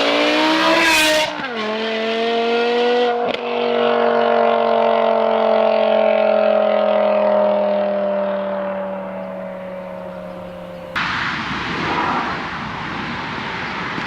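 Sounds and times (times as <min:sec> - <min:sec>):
car engine running under load: 0:03.3 - 0:11.0.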